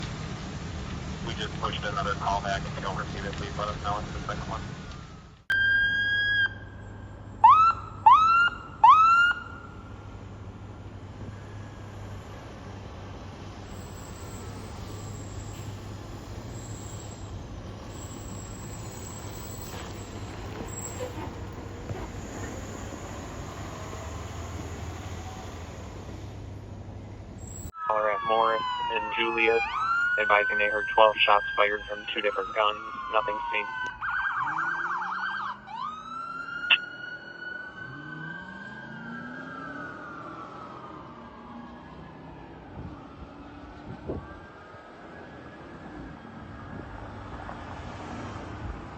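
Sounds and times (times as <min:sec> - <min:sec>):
road noise: 0:00.0 - 0:48.9
fire engine siren: 0:00.1 - 0:26.1, 0:27.4 - 0:48.9
vehicle engine humming: 0:09.4 - 0:27.7
truck engine accelerating: 0:09.9 - 0:27.7, 0:31.3 - 0:48.9.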